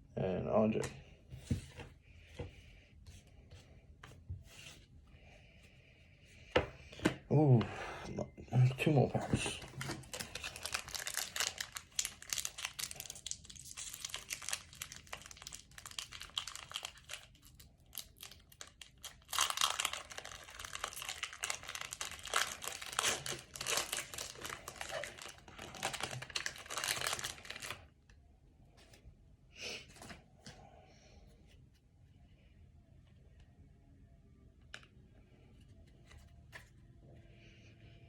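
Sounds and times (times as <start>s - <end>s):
plastic wrapper crinkling: 9.4s - 27.9s.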